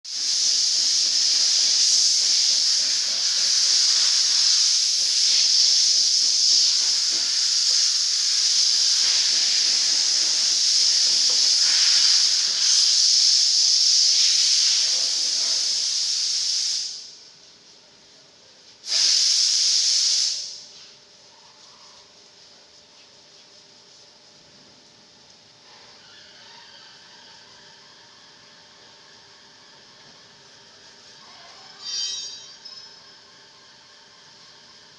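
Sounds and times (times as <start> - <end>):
compressed air hissing: 0.1 - 17.3, 18.8 - 21.0.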